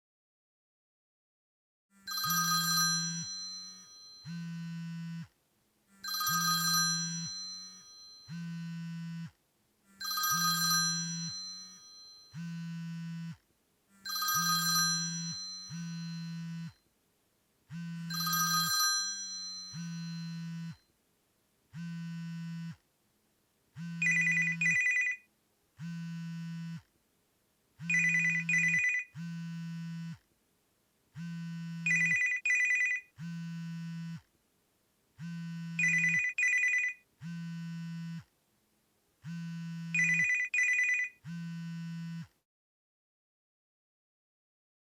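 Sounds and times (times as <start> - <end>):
phone vibration buzzing: 2.0 - 16.9, 17.7 - 20.9, 21.7 - 22.8, 23.7 - 26.9, 27.8 - 30.3, 31.1 - 34.3, 35.2 - 38.3, 39.2 - 42.4
chiming ringtone: 2.1 - 4.4, 6.1 - 8.4, 10.0 - 12.4, 14.1 - 16.5, 18.1 - 20.7, 24.0 - 25.2, 27.9 - 29.1, 31.9 - 33.1, 35.8 - 37.0, 40.0 - 41.2
sharp trilling ringtone: 2.1 - 4.7, 6.0 - 8.7, 10.0 - 12.6, 14.0 - 16.8, 18.1 - 20.8, 24.0 - 25.2, 27.9 - 29.2, 31.8 - 33.2, 35.8 - 37.0, 39.9 - 41.4.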